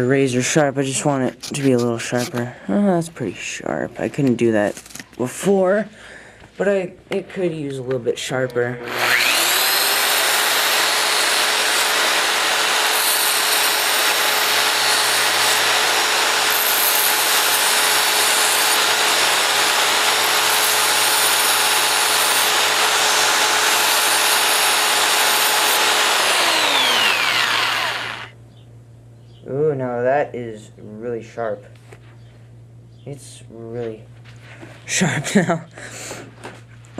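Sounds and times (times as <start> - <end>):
drill motor whining: 8.8 - 28.3.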